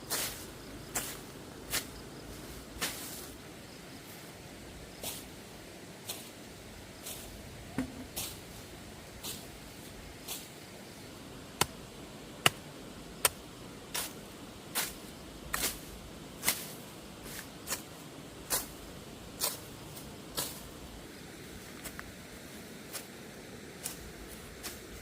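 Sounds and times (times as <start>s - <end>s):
brushy scraping strokes: 0.0s - 4.3s, 4.9s - 11.0s, 13.3s - 18.8s
sharp knocks: 7.8s - 8.1s.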